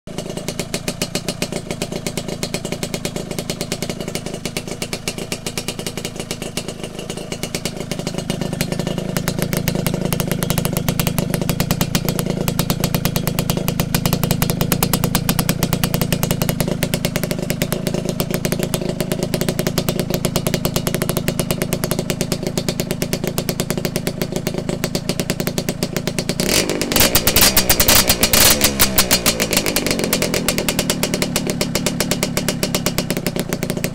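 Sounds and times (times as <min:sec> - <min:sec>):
two-stroke motorcycle engine idling: 0:00.1 - 0:33.9
throttle blips revving engine: 0:26.4 - 0:30.5.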